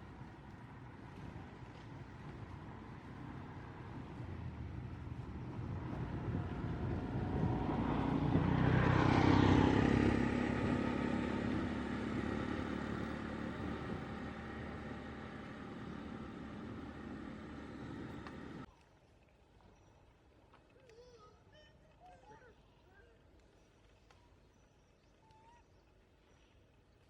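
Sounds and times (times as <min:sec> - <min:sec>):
vehicle passing by: 0:00.0 - 0:18.7.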